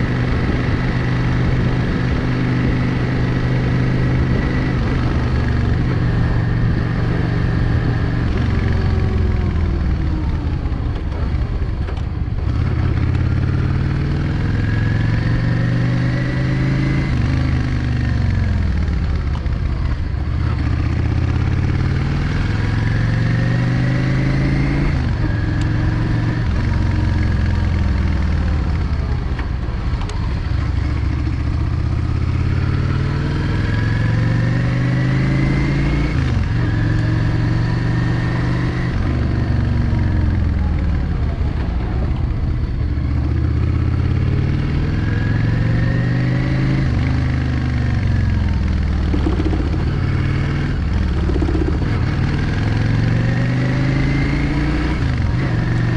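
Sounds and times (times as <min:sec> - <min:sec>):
motorcycle engine revving: 0:00.0 - 0:55.9.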